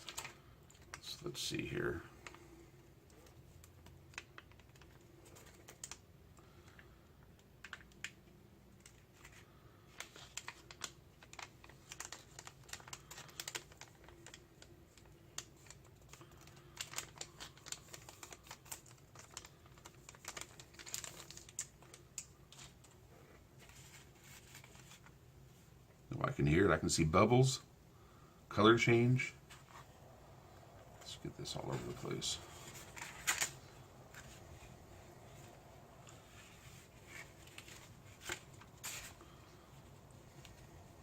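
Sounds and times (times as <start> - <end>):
heater pad crackling: 29.4 - 41.0.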